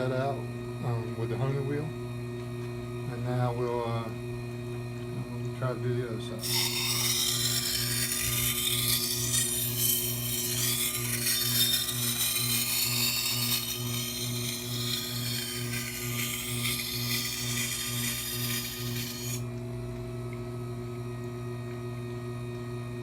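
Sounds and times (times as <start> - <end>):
sharpening machine low hum: 0.0 - 23.0
knife grinding on wet stone: 6.4 - 19.5.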